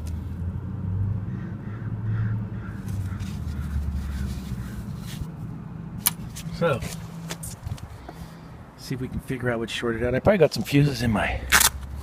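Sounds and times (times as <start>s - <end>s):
harsh bird calls: 1.2s - 5.1s.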